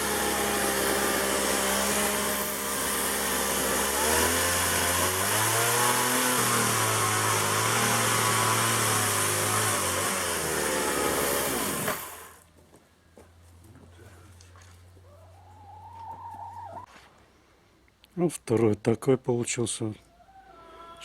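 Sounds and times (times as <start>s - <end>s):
chainsaw cutting wood: 0.0s - 12.5s.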